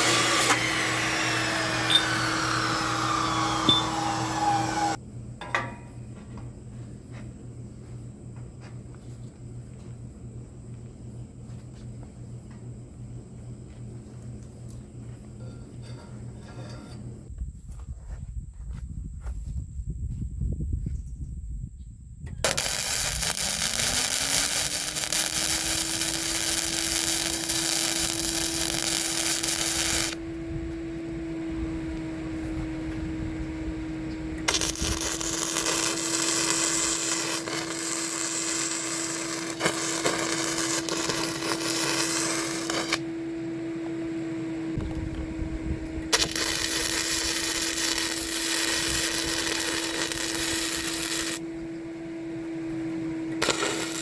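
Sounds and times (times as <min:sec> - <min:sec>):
harsh hissing work noise: 0:00.0 - 0:05.0, 0:22.4 - 0:30.3, 0:30.9 - 0:43.2, 0:46.0 - 0:51.7, 0:52.3 - 0:54.0
power tool motor running: 0:00.0 - 0:05.0, 0:22.4 - 0:30.3, 0:31.3 - 0:51.6, 0:52.6 - 0:54.0.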